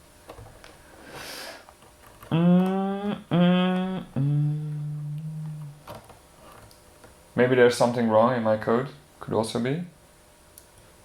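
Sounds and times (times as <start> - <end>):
short breath: 1.0 - 1.7
man humming: 2.3 - 5.9.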